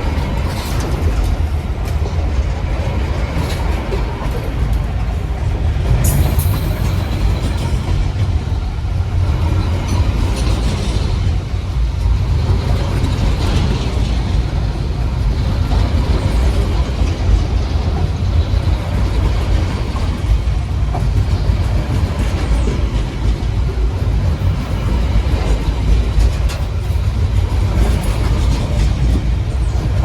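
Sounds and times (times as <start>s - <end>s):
diesel locomotive rumble: 0.0s - 30.0s
rolling rail noise: 0.0s - 30.0s.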